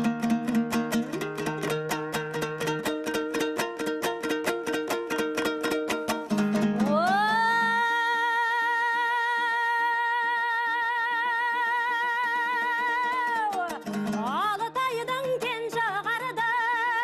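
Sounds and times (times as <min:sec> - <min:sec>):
plucked string instrument strumming: 0:00.0 - 0:08.7, 0:11.6 - 0:17.0
woman singing long high note: 0:06.8 - 0:13.8.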